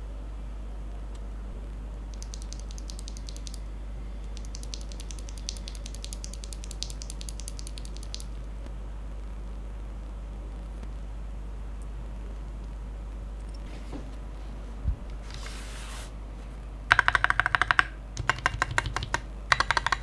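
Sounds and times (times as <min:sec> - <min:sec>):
steady low hum: 0:00.0 - 0:20.0
mechanical keyboard typing: 0:02.2 - 0:03.6, 0:04.3 - 0:08.3, 0:16.9 - 0:20.0.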